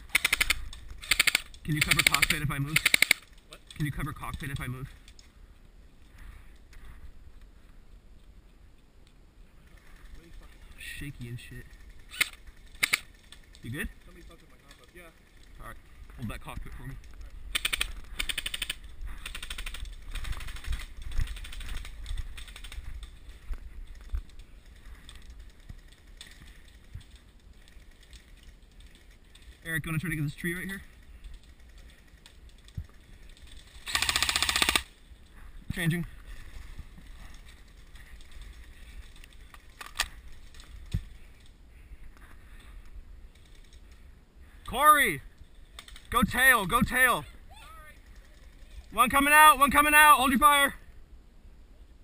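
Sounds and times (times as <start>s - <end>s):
magazine clicks and rattles: 0.0s - 3.8s, 11.6s - 15.6s, 17.0s - 29.6s, 31.2s - 35.0s, 37.0s - 41.6s
toy guns firing bursts: 0.1s - 3.2s, 12.1s - 13.0s, 33.8s - 34.9s.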